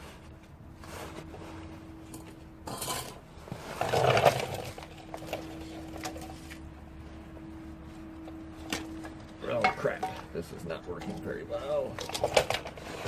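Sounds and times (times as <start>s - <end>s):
faint steady hum: 0.0s - 13.0s
metal tools clinking and scraping: 2.0s - 6.7s, 8.2s - 13.0s.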